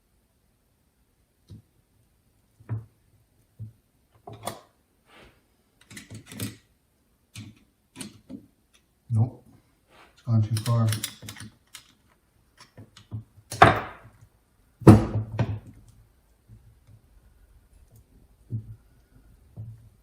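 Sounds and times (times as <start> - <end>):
loud metal thunks: 13.6 - 14.0.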